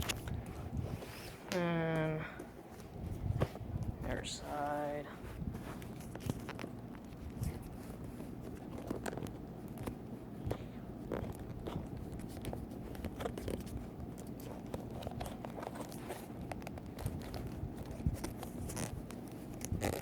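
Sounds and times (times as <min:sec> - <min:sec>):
leather belt clicks and creaks: 0:08.4 - 0:10.0, 0:11.0 - 0:20.0.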